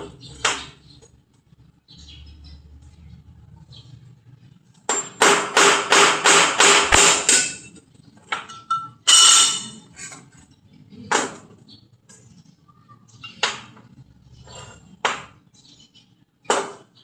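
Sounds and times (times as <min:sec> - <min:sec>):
hammer striking metal: 0:04.9 - 0:07.8, 0:08.4 - 0:09.8.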